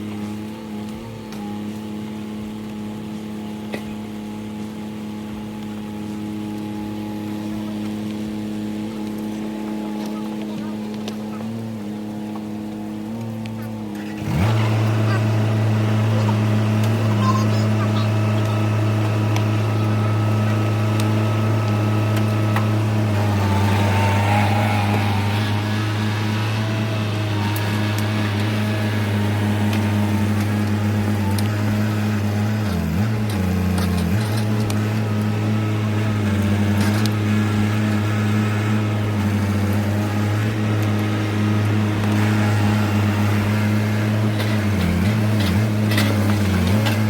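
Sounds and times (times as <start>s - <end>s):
diesel engine running: 0.0s - 47.0s.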